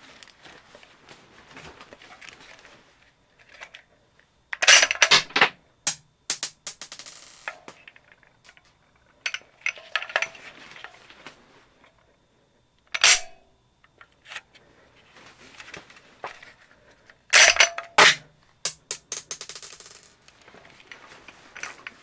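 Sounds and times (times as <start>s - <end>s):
pistol slide metallic clacks: 13.0s - 13.4s, 17.4s - 19.0s.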